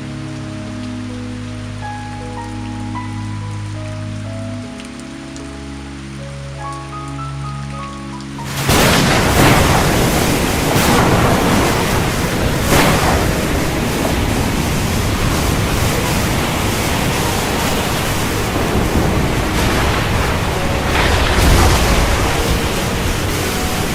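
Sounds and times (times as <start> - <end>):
heavy rain pouring: 0.0 - 23.9
deep rumble: 8.4 - 23.9.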